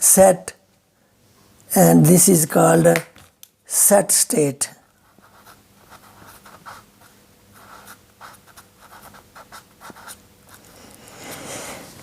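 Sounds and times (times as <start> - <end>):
pen scratching while writing: 5.1 - 10.7.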